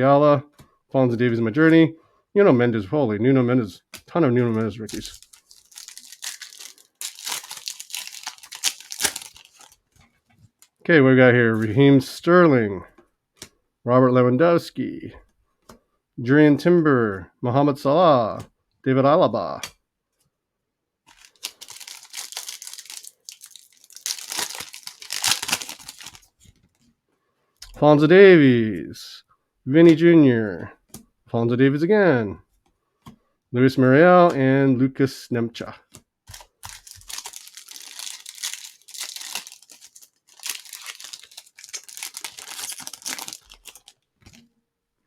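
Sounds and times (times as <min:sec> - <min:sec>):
plastic wrapper crinkling and tearing: 0:04.4 - 0:10.8, 0:21.1 - 0:26.8, 0:36.3 - 0:44.5.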